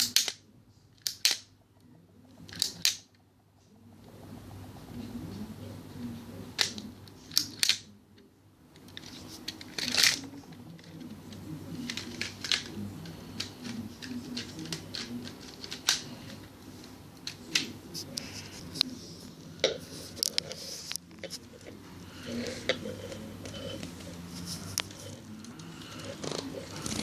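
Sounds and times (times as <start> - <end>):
plastic toy rifle mechanism clicking: 0.0 - 0.4, 1.0 - 1.5, 2.5 - 3.1, 6.6 - 7.9.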